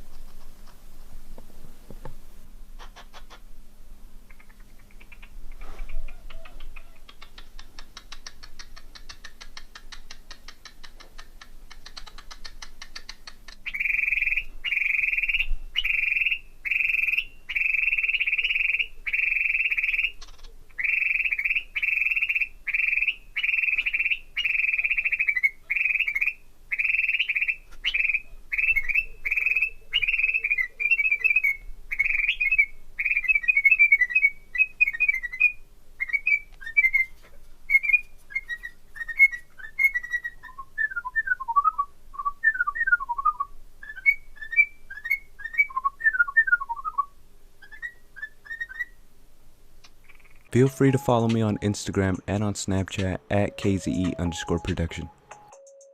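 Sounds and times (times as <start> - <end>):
cockatiel whistling: 20.8 - 49.0.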